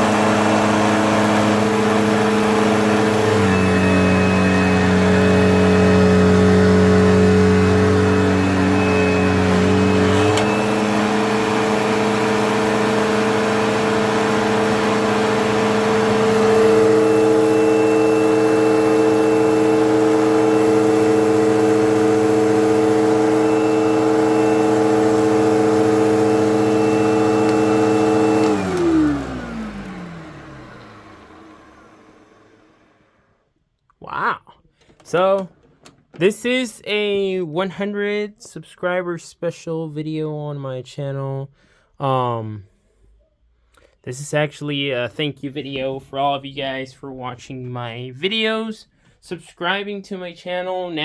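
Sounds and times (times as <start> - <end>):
vacuum cleaner motor whine: 0.0 - 33.4.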